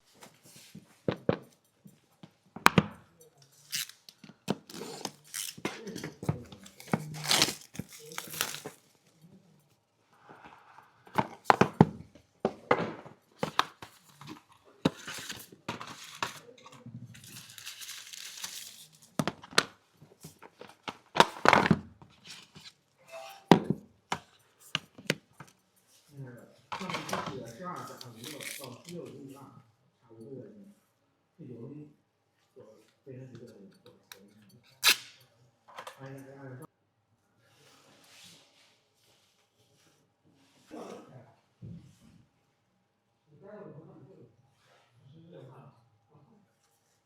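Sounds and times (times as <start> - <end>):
plastic and paper tearing: 3.6 - 9.0, 13.4 - 19.6, 27.8 - 29.0.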